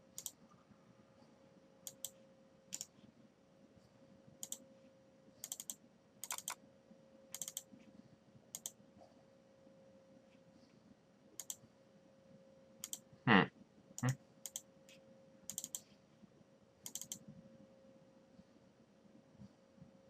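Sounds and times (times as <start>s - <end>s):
faint electrical hum: 0.0s - 20.0s
computer mouse clicks: 0.1s - 0.4s, 1.8s - 3.0s, 4.4s - 4.6s, 5.4s - 6.6s, 7.3s - 7.7s, 8.5s - 8.8s, 11.4s - 11.6s, 12.8s - 13.0s, 14.0s - 15.9s, 16.8s - 17.3s.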